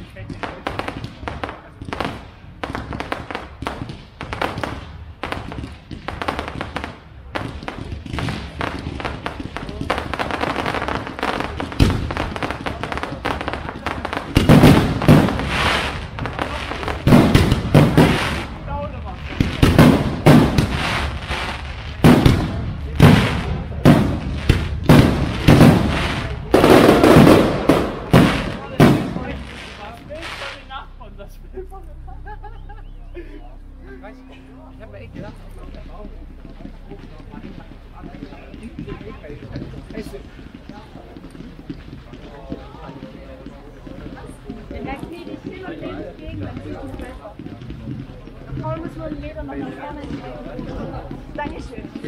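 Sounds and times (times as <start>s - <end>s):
fireworks bangs and crackles: 0.0s - 31.3s, 34.7s - 52.0s
firework shells bursting: 19.3s - 30.6s.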